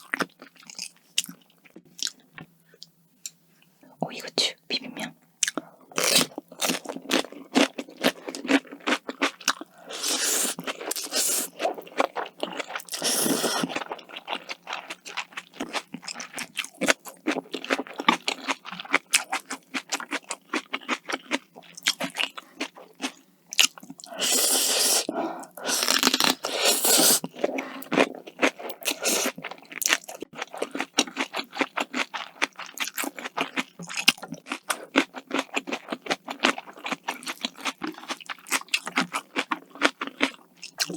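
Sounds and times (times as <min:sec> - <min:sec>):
crisp crunching and chewing: 0:00.0 - 0:02.4, 0:05.4 - 0:24.5, 0:25.5 - 0:40.9
slurping noodles: 0:09.9 - 0:11.7, 0:12.8 - 0:13.8, 0:24.0 - 0:27.9.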